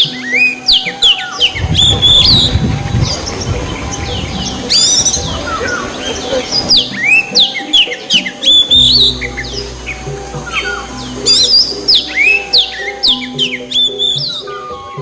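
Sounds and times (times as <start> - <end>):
bird singing whistled notes: 0.0 - 15.0
low rumble: 1.5 - 7.4.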